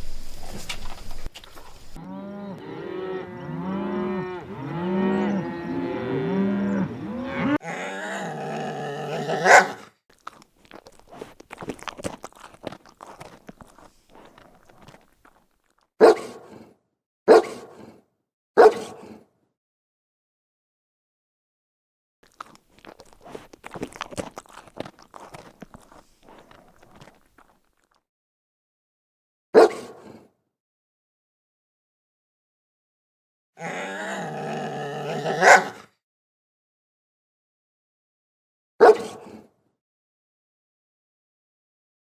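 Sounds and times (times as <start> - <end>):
farm animals calling: 1.9 - 9.8, 33.6 - 35.8.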